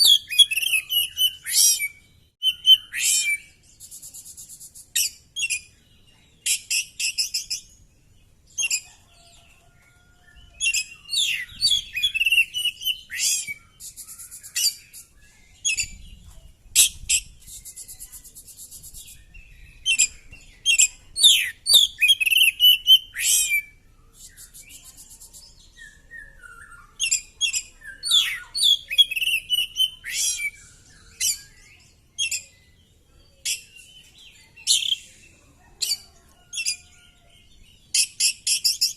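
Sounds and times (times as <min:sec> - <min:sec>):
bird singing whistles and trills: 0:00.0 - 0:05.8, 0:10.3 - 0:35.2.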